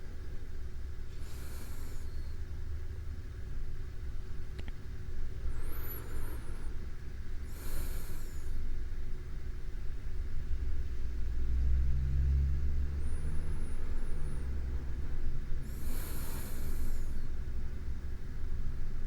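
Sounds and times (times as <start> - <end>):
person breathing while asleep: 1.1 - 2.4, 5.4 - 8.7, 15.5 - 17.5.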